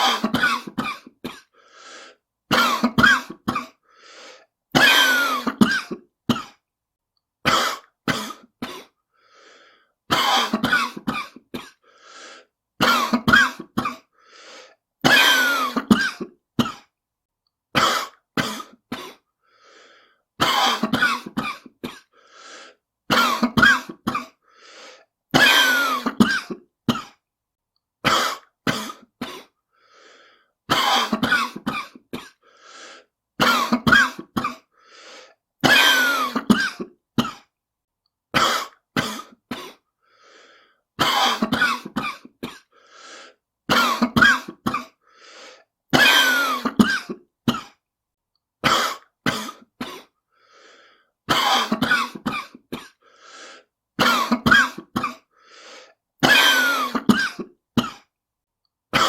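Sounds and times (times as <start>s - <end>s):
person coughing harshly: 0.0s - 1.6s, 2.5s - 3.9s, 4.7s - 6.6s, 7.4s - 9.0s, 10.1s - 11.9s, 12.8s - 14.2s, 15.0s - 16.9s, 17.7s - 19.3s, 20.4s - 22.2s, 23.1s - 24.4s, 25.3s - 27.2s, 28.0s - 29.6s, 30.7s - 32.5s, 33.4s - 34.8s, 35.6s - 37.5s, 38.3s - 39.9s, 41.0s - 42.8s, 43.7s - 45.0s, 45.9s - 47.8s, 48.6s - 50.2s, 51.3s - 53.1s, 54.0s - 55.3s, 56.2s - 58.1s.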